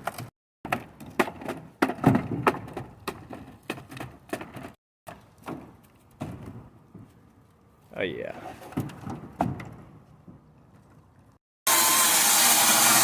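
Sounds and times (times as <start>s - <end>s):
wooden boards cracking: 0.0s - 6.7s.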